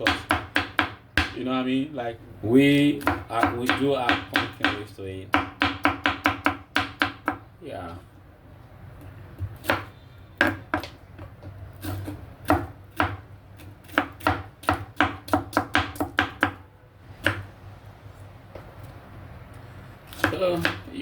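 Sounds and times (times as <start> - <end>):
knife chopping on cutting board: 0.0 - 1.4, 3.0 - 7.4, 9.4 - 16.6, 17.2 - 17.5, 20.1 - 20.9.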